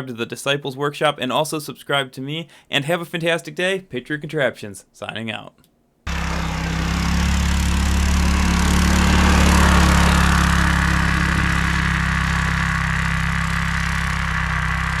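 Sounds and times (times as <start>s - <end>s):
small engine running: 6.1s - 15.0s.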